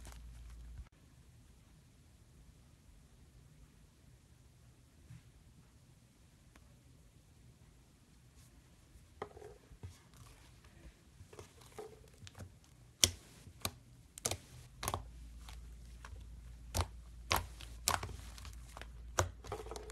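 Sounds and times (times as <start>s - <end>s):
slime squishing: 0.0s - 0.9s, 9.9s - 19.9s.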